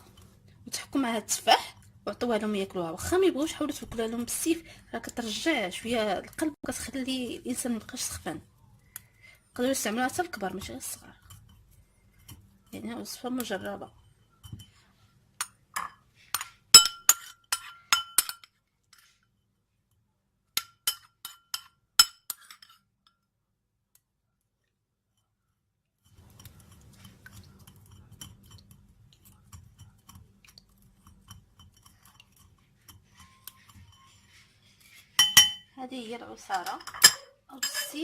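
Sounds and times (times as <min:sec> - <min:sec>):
glassware clinking: 0:15.8 - 0:18.5, 0:35.2 - 0:35.7, 0:36.5 - 0:38.0.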